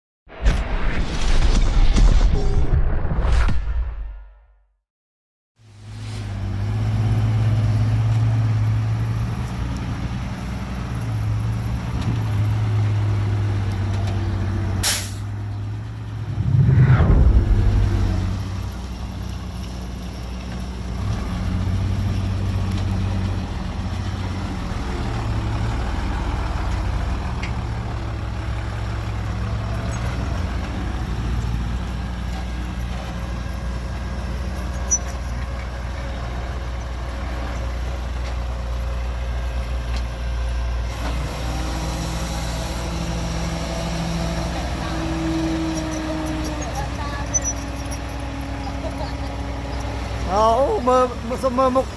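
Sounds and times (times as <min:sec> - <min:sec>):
diesel truck engine running: 0:06.3 - 0:51.9
air brake hiss: 0:14.8 - 0:15.3.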